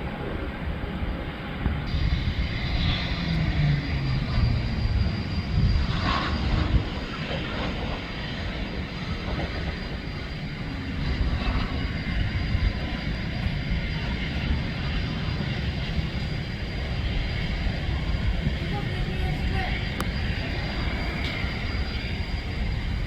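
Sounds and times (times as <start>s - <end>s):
small aircraft engine rumble: 0.0s - 23.0s.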